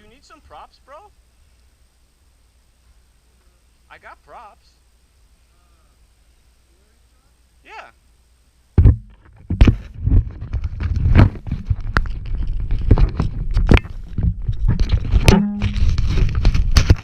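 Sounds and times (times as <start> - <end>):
wind buffeting on microphone: 9.3 - 17.0.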